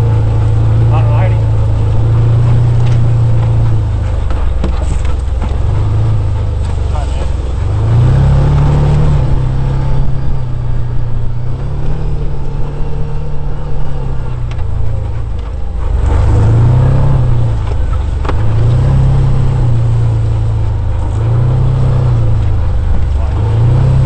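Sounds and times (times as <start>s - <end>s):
vehicle engine revving: 0.0s - 24.0s
knocks from bumps: 2.0s - 9.8s.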